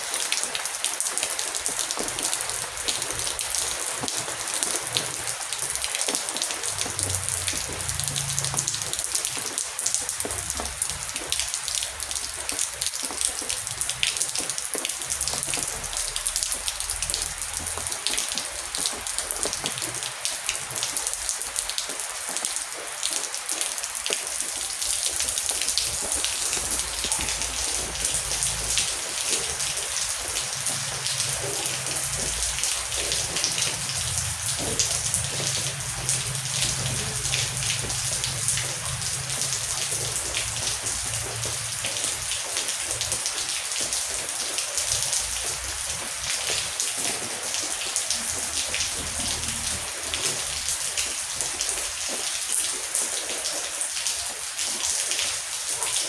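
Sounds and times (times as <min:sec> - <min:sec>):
heavy rain falling: 0:00.0 - 0:56.0
distant thunder rumbling: 0:06.6 - 0:09.5, 0:25.2 - 0:41.6.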